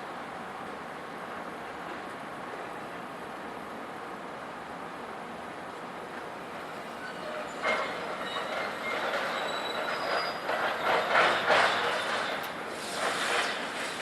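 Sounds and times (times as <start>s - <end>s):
high metallic squeals: 7.0s - 13.6s.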